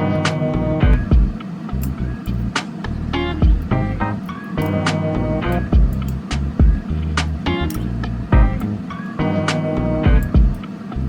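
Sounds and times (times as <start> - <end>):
guitar: 0.0 - 11.0
kick drum: 0.8 - 1.4, 3.4 - 3.7, 5.7 - 6.0, 6.6 - 6.9, 8.3 - 8.6, 10.0 - 10.6
ticking cymbals: 0.8 - 11.0.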